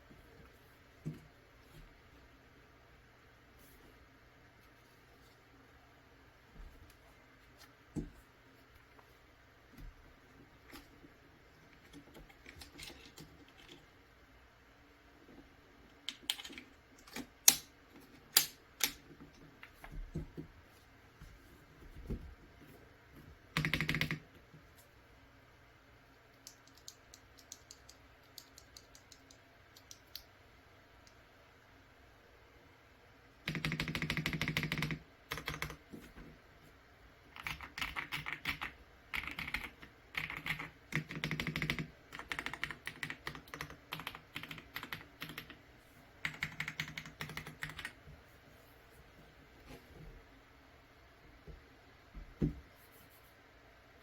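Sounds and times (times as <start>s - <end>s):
mechanical keyboard typing: 16.1s - 17.7s, 23.5s - 24.3s, 26.4s - 30.2s, 33.4s - 35.8s, 37.3s - 45.6s, 46.2s - 48.0s.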